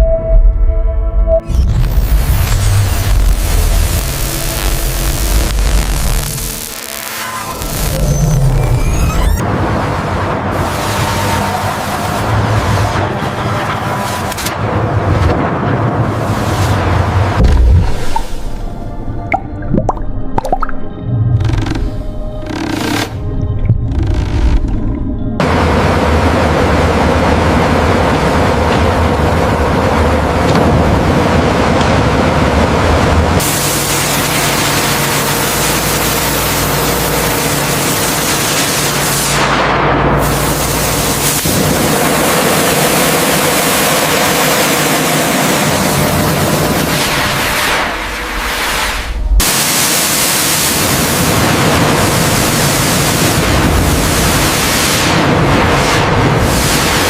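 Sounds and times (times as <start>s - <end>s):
heavy steady rumble: 0.0s - 57.0s
loud rushing hiss: 1.9s - 8.5s, 33.4s - 39.5s, 40.1s - 57.0s
low boom: 14.6s - 21.5s.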